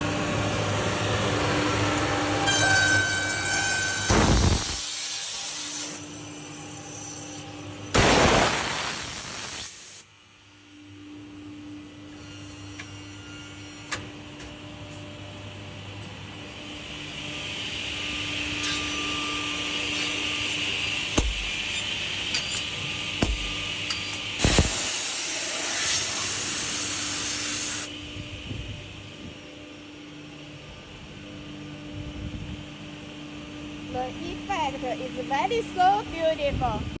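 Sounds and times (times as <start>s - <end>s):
loud bursts of machine noise: 0.2s - 6.8s, 7.6s - 10.1s, 19.3s - 28.0s
high whine: 2.3s - 10.1s
loud even hiss: 4.1s - 5.6s, 7.9s - 10.0s, 24.4s - 27.9s
machine motor hum: 19.8s - 26.0s
sharp thump: 23.2s - 23.6s.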